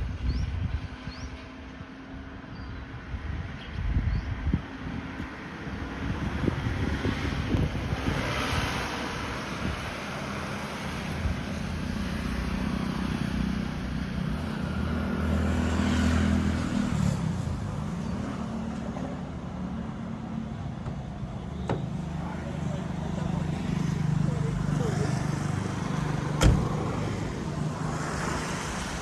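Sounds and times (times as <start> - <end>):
engine humming: 10.5 - 29.0.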